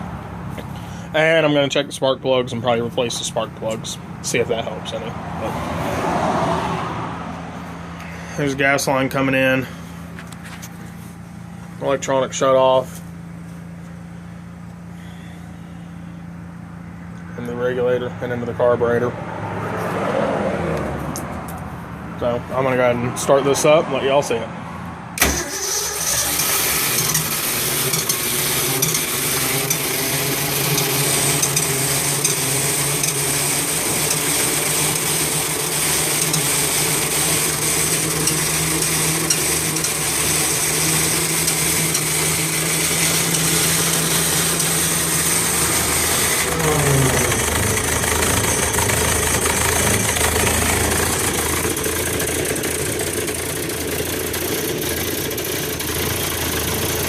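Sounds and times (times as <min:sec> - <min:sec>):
generator engine running: 0:00.0 - 0:06.2, 0:07.0 - 0:19.4, 0:20.8 - 0:57.0
generator starter cranking: 0:25.2 - 0:57.0.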